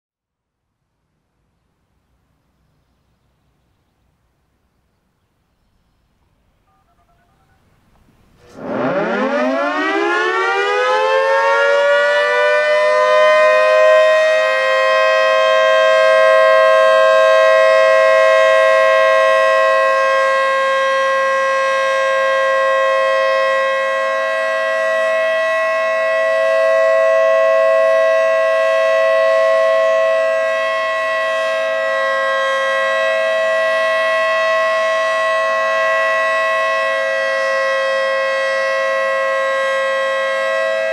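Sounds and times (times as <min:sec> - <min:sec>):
two-tone warning siren: 0:06.6 - 0:07.7, 0:08.3 - 0:40.9.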